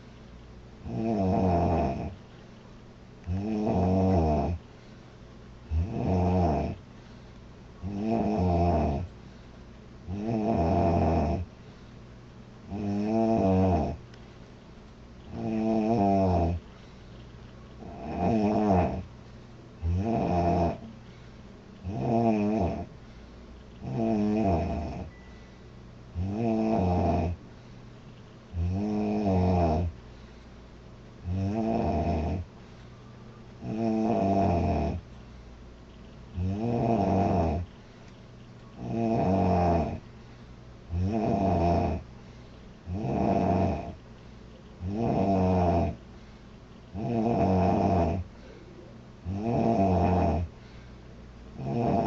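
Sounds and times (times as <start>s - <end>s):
girl snoring loudly: 0.9s - 2.1s, 3.3s - 4.6s, 5.7s - 6.8s, 7.8s - 9.0s, 10.1s - 11.5s, 17.8s - 19.0s, 21.9s - 22.9s, 23.9s - 25.1s, 26.2s - 27.4s, 28.6s - 29.9s, 31.3s - 32.4s, 33.7s - 35.0s, 38.8s - 40.0s, 41.0s - 42.0s, 42.9s - 44.0s, 44.8s - 46.0s, 47.0s - 48.2s, 49.3s - 50.5s, 51.6s - 52.0s.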